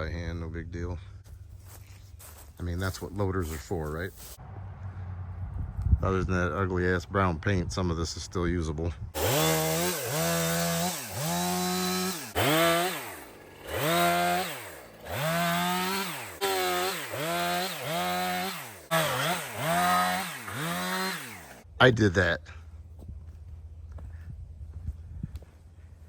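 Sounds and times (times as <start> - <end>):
chainsaw revving and cutting wood: 9.2 - 21.7.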